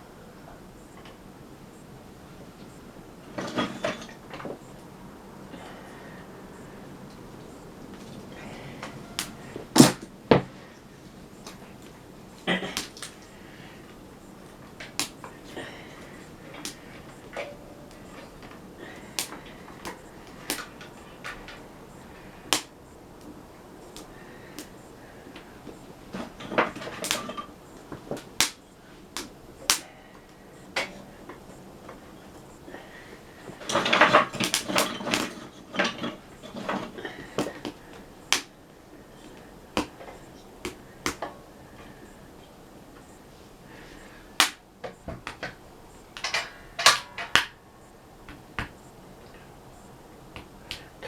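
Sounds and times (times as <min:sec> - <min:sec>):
firewood and stove knocks: 0:09.2 - 0:10.6, 0:26.2 - 0:28.6, 0:33.5 - 0:38.5, 0:46.2 - 0:47.6
firewood knocking on wood stove: 0:33.6 - 0:38.5.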